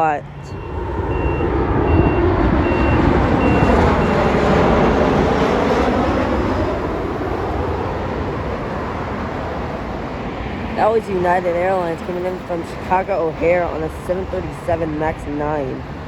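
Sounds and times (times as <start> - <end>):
reversing alarm beeping: 0.0 - 4.7
jet engine rumble: 0.0 - 16.0.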